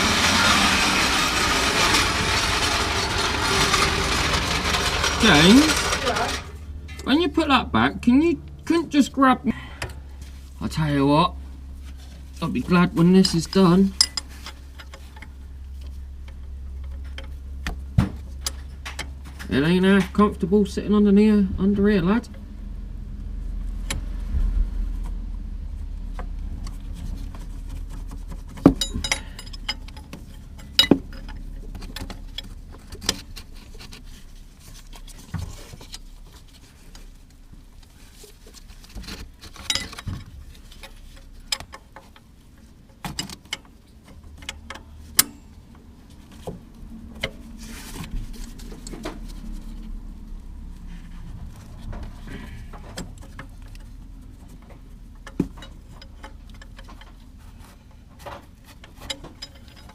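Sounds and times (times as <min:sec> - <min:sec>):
metal tools clinking: 0:01.1 - 0:07.1, 0:13.1 - 0:15.0, 0:28.7 - 0:32.5, 0:39.5 - 0:41.6.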